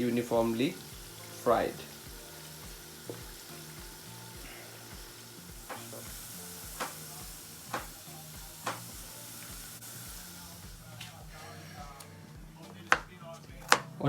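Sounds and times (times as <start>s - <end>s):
onions sizzling in oil: 0.0s - 12.0s
utensil knocking against pan: 2.1s - 9.1s.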